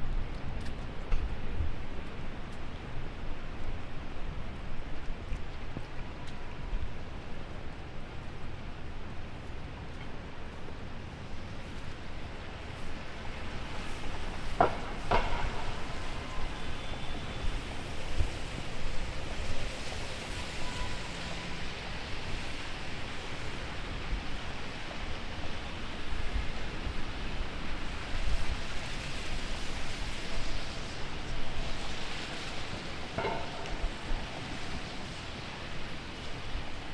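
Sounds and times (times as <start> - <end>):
heavy rain on street: 0.0 - 36.9
wind rumbling on microphone: 0.0 - 36.9.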